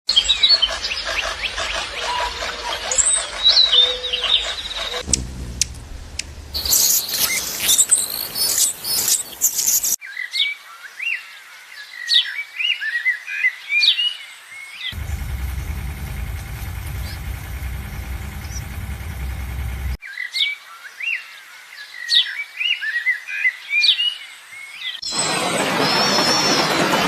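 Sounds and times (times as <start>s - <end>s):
birds chirping: 0.1s - 10.0s, 14.9s - 20.0s
low rumble: 5.0s - 7.2s, 15.0s - 20.0s
noisy hiss: 5.0s - 10.0s, 15.0s - 20.0s.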